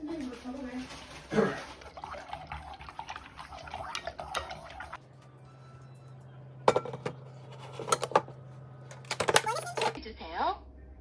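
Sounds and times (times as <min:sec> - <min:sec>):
dishes and cutlery clinking: 0:06.6 - 0:08.3.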